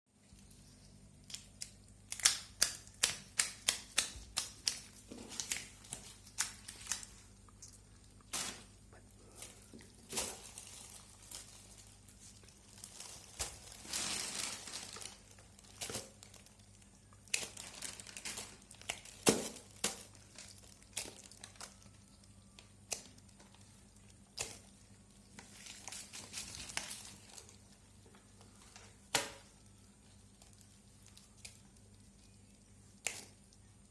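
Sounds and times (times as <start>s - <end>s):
crinkling handling noise: 0.2s - 33.9s.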